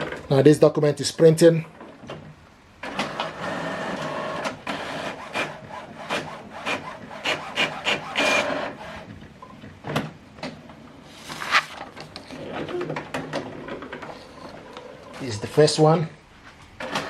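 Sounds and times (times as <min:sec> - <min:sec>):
printer mechanism whirring: 0:01.8 - 0:10.8, 0:12.0 - 0:15.3, 0:16.8 - 0:17.0.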